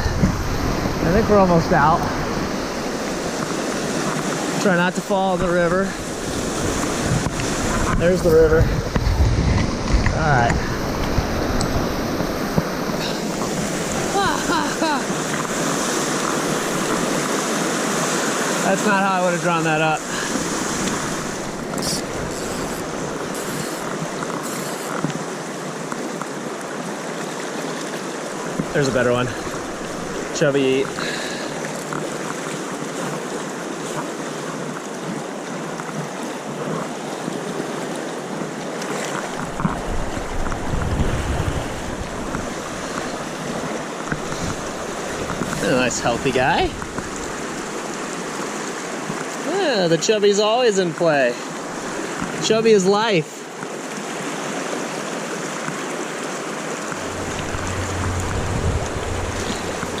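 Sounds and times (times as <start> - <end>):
wind rumbling on microphone: 0.0 - 4.6, 5.4 - 18.5, 20.0 - 25.2, 28.5 - 31.0, 38.4 - 48.4, 56.8 - 60.0
river water rushing: 0.0 - 60.0
low rumble: 56.9 - 60.0.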